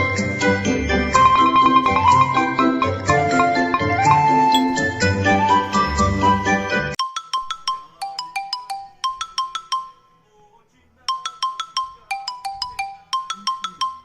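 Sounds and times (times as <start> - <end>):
background music passage: 0.0 - 7.0
bell-like mallet percussion melody: 0.0 - 10.1, 11.1 - 14.0.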